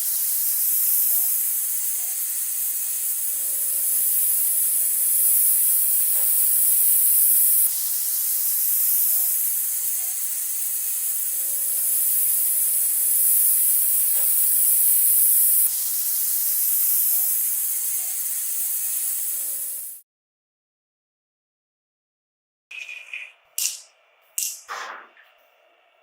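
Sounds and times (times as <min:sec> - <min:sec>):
high-pitched spraying hiss: 0:00.0 - 0:20.0.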